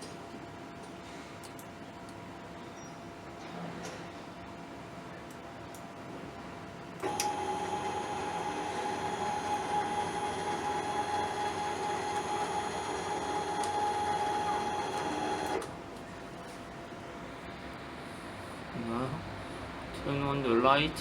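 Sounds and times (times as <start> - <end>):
servo motor whine: 7.0 - 15.6.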